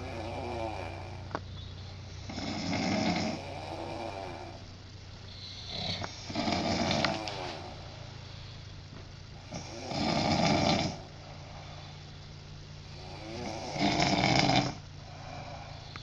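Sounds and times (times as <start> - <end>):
person snoring: 0.0 - 1.4, 2.1 - 4.6, 5.3 - 7.9, 9.4 - 12.0, 12.9 - 16.0
quiet breathing: 0.0 - 16.0.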